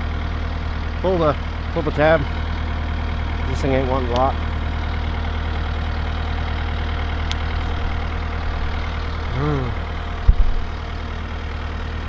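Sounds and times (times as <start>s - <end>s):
tracked machine engine idling: 0.0s - 12.0s
heavy low thump: 8.6s - 10.8s
short rising and falling call: 9.2s - 10.3s.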